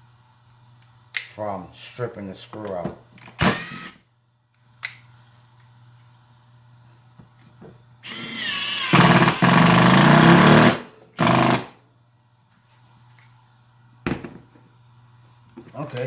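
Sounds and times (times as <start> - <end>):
impact driver hammering screw: 3.4 - 3.9, 8.0 - 11.7.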